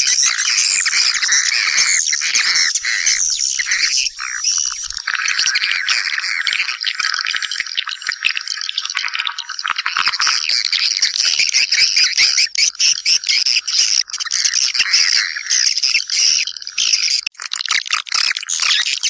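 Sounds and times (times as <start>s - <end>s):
flock of birds twittering: 0.0s - 6.8s, 10.2s - 17.2s.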